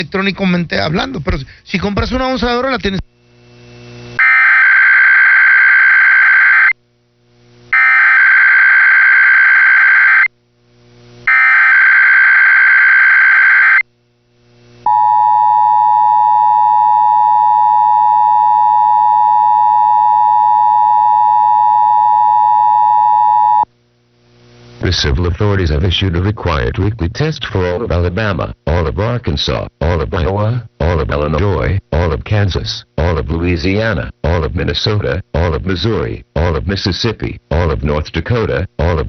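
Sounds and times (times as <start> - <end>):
loud steady attention tone: 14.8 - 23.7.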